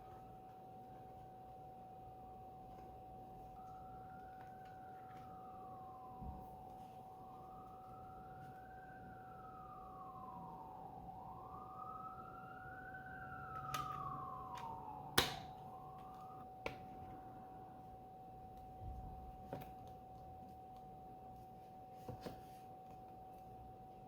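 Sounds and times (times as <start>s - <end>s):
siren wailing: 2.2s - 20.3s.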